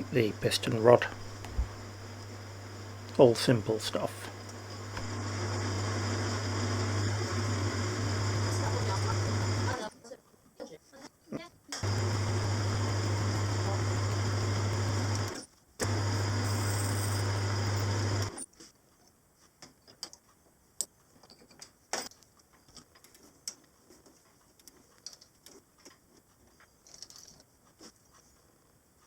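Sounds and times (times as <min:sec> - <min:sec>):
small motor humming: 0:00.0 - 0:09.8, 0:11.8 - 0:18.4.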